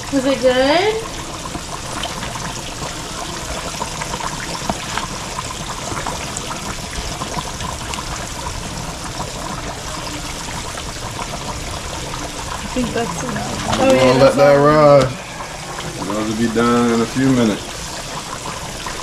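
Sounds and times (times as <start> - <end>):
fish deep-frying in hot oil: 0.0 - 19.0.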